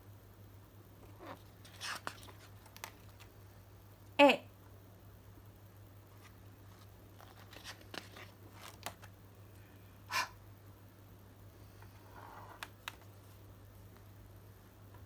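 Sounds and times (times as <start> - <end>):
paper pages rustling: 1.4 - 3.4, 6.1 - 9.2, 11.8 - 13.4.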